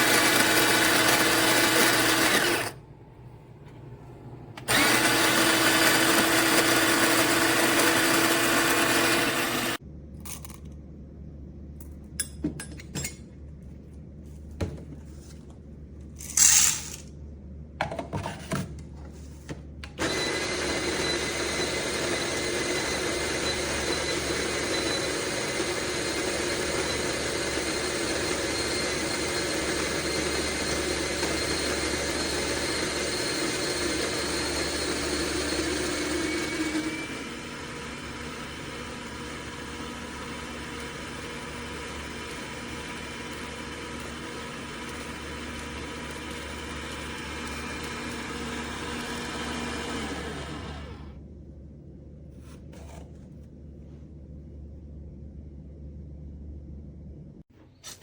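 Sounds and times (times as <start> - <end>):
electric coffee grinder running: 0.0 - 2.8, 4.6 - 9.8, 20.0 - 51.2.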